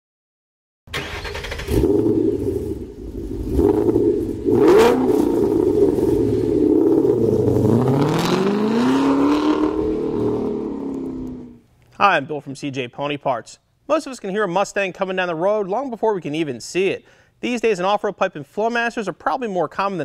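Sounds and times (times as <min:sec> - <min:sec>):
car engine revving: 0:01.0 - 0:11.6.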